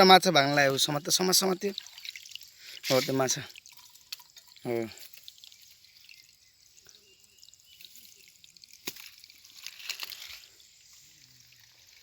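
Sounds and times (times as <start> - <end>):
pond water splashing: 0.0 - 12.0
water drips pattering: 0.2 - 10.1.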